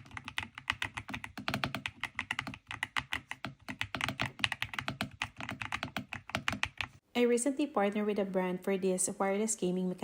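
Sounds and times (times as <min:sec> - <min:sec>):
fast typing on mechanical keyboard: 0:00.0 - 0:07.0.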